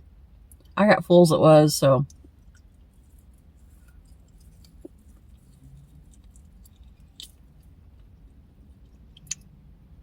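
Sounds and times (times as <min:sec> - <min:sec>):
low steady hum: 0:00.0 - 0:10.0
quiet chewing: 0:02.1 - 0:09.5.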